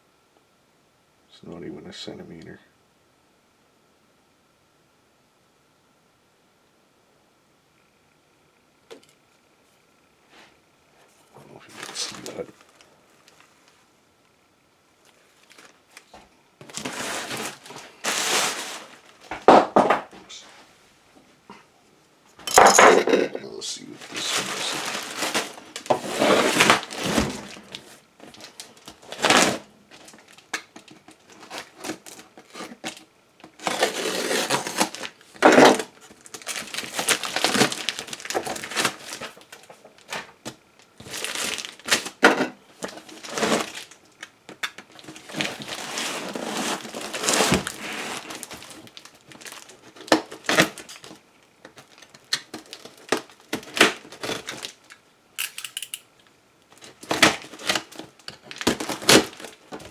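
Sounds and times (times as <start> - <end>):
packaging crinkling and tearing: 11.7 - 13.8, 15.0 - 19.3, 23.9 - 55.9, 56.7 - 59.9.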